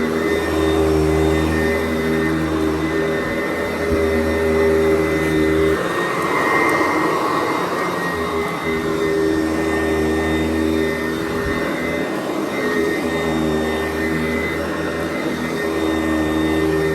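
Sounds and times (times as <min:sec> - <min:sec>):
vacuum cleaner hum: 0:00.0 - 0:16.9
higher rushing sound: 0:04.4 - 0:10.4.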